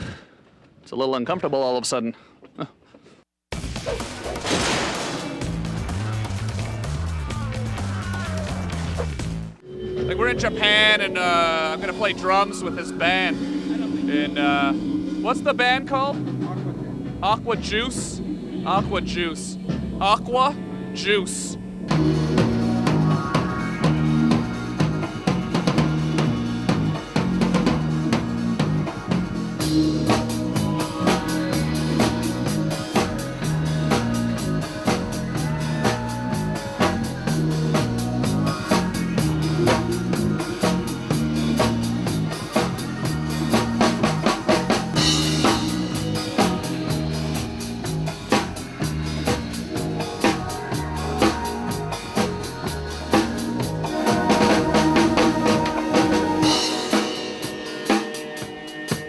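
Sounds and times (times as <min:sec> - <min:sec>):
bass drum and snare beat: 0:05.4 - 0:09.6, 0:22.0 - 0:57.3
bass line: 0:05.4 - 0:57.4
cymbals: 0:29.6 - 0:59.0.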